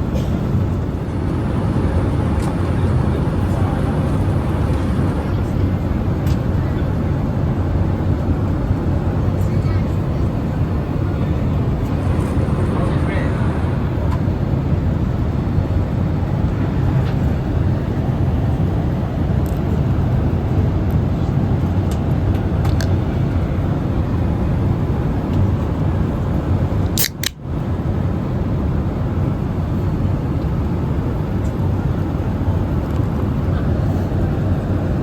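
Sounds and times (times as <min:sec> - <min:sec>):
airplane cabin engine noise: 0:00.0 - 0:35.0
sharp click: 0:26.9 - 0:27.4.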